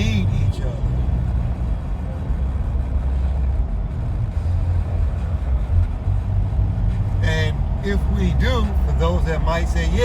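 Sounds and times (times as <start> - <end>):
vehicle low rumble: 0.0 - 10.0.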